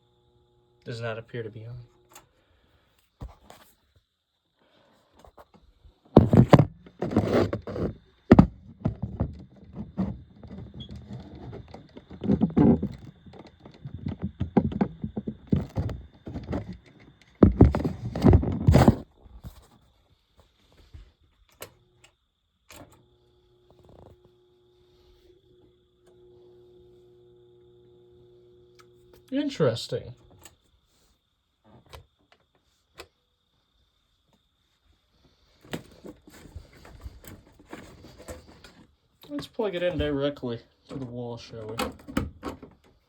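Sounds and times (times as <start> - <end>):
faint steady hum: 0.0 - 43.0
handling clunks and rattles: 6.1 - 19.6, 35.6 - 43.0.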